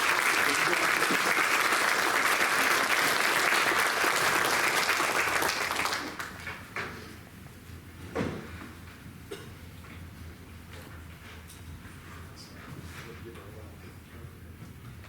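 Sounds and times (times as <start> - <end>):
audience applauding: 0.0 - 6.8.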